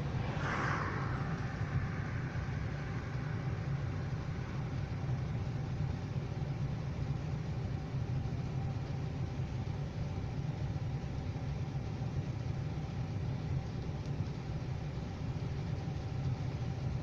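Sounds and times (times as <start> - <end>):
low rumble: 0.0 - 9.0.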